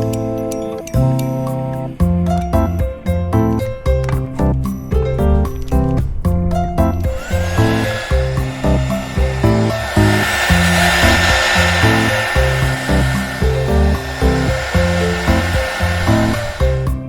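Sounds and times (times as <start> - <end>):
background music with steady beat: 0.0 - 17.0
motorised tool high whine: 7.1 - 17.0.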